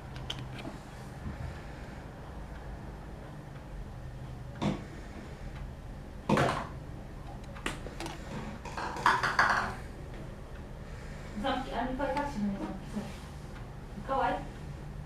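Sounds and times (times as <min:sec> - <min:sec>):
cards and packaging rustling: 0:00.1 - 0:00.8.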